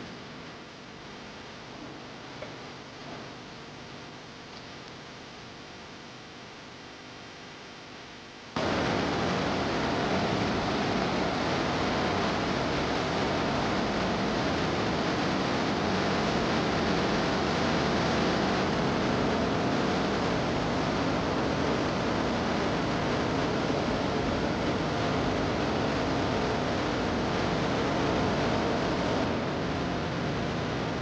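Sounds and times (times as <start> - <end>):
loud steady rushing noise: 8.6 - 31.0.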